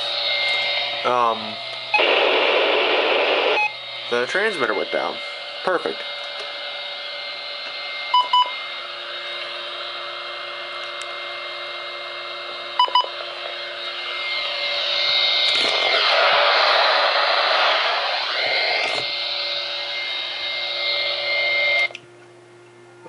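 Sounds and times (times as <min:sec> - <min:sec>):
radio static hiss: 0:00.0 - 0:06.6, 0:13.0 - 0:21.9.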